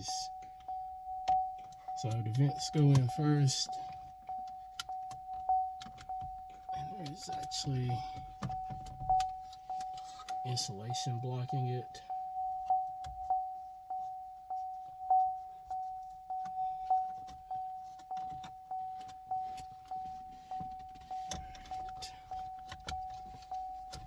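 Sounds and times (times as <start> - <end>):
car warning chime dinging: 0.0 - 24.0.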